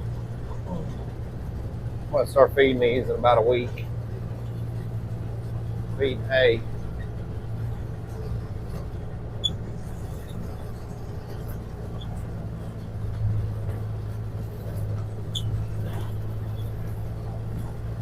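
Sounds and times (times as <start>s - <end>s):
vehicle engine humming: 0.0s - 18.0s.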